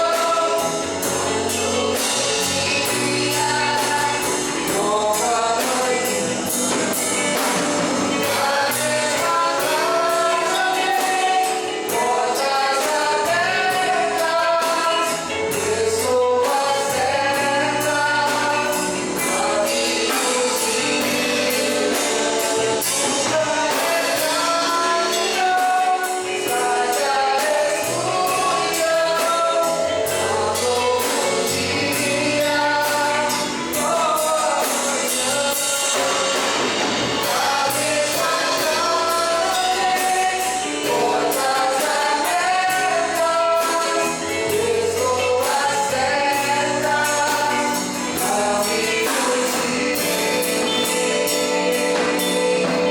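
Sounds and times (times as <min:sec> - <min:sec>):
bass: 0:00.0 - 0:52.9
drums with steady beat: 0:00.0 - 0:52.9
voices singing gospel song: 0:00.0 - 0:52.9.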